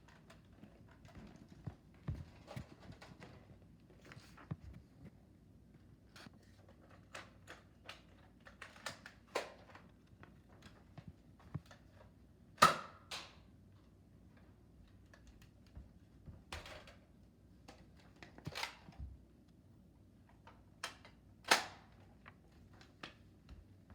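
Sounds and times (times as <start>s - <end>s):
sharp plastic snap: 12.6s - 13.4s
plastic toy blaster clicks and knocks: 20.8s - 22.0s.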